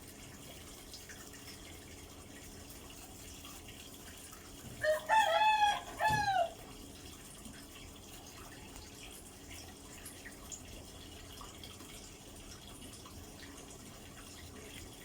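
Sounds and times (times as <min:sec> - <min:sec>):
rooster crowing: 0:04.8 - 0:06.6.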